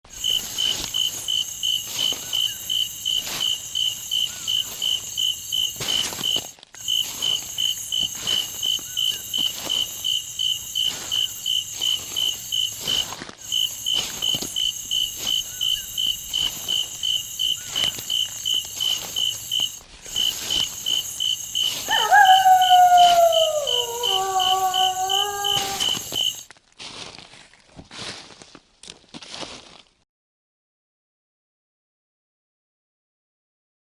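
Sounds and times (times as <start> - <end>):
crickets chirping: 0.1 - 26.4
wolves howling: 21.6 - 26.4.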